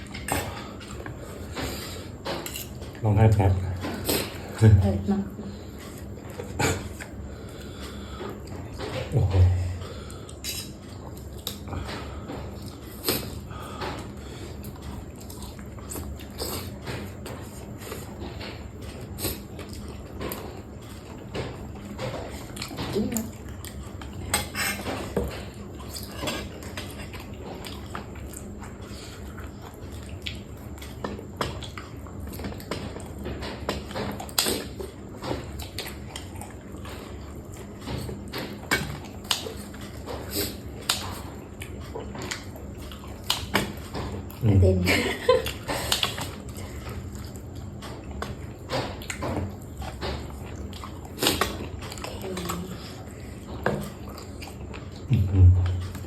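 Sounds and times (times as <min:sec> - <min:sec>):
chewing and biting: 0:05.6 - 0:44.5, 0:45.4 - 0:56.0
utensils clinking against dish: 0:10.4 - 0:10.8, 0:24.3 - 0:27.1.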